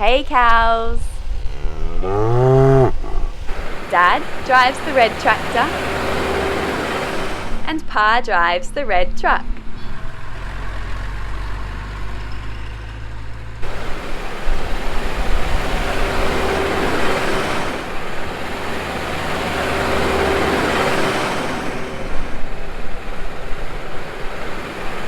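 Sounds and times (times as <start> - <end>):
rushing vehicle noise: 0.0 - 8.0, 9.4 - 25.0
faint steady whine: 0.0 - 9.7
tractor engine hum: 0.0 - 25.0.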